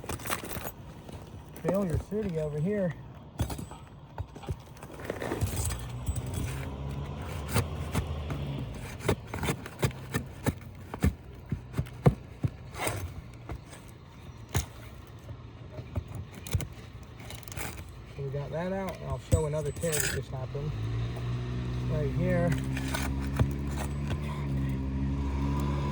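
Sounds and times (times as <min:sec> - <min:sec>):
shingle scraping: 0:00.0 - 0:25.0
pry tool clicks and knocks: 0:15.8 - 0:17.9, 0:18.7 - 0:20.4.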